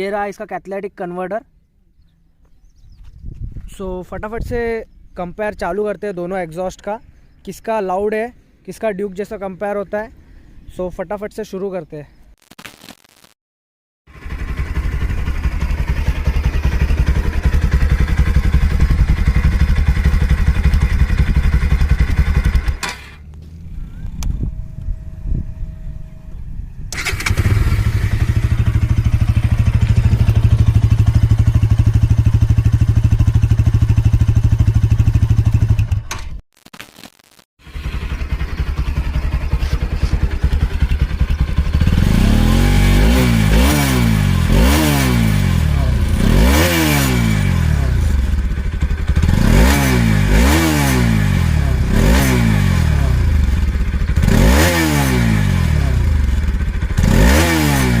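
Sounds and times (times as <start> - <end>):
motorcycle engine idling and revving: 14.1 - 36.3, 37.6 - 58.0.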